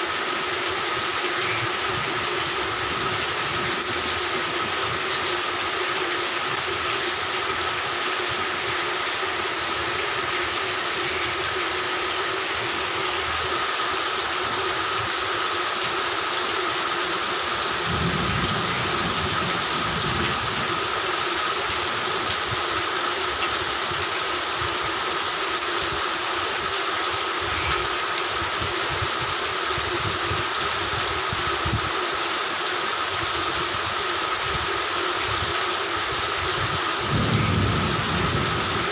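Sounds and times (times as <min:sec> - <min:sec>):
steady rain: 0:00.0 - 0:38.9
frogs calling: 0:01.2 - 0:02.1, 0:10.2 - 0:11.9, 0:27.4 - 0:28.1, 0:37.1 - 0:38.8
distant thunder rumbles: 0:37.1 - 0:38.9.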